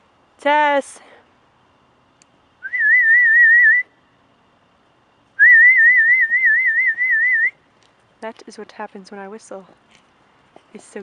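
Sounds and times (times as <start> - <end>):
person whistling: 2.6 - 3.9, 5.4 - 7.6.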